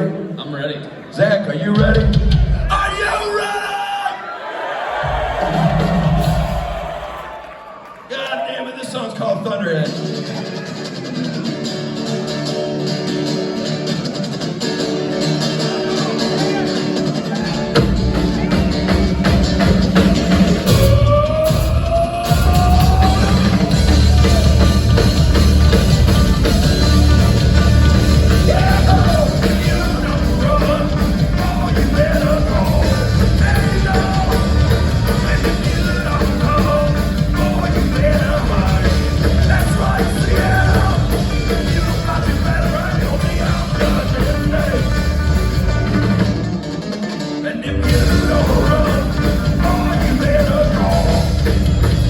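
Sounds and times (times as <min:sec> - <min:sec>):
heavy rock band playing: 0:04.9 - 0:07.3, 0:09.8 - 0:52.0
pounding drums: 0:04.9 - 0:07.5, 0:16.4 - 0:46.8, 0:47.9 - 0:52.0
bending lead guitar lines: 0:09.8 - 0:52.0
bass: 0:15.2 - 0:46.7, 0:47.6 - 0:52.0.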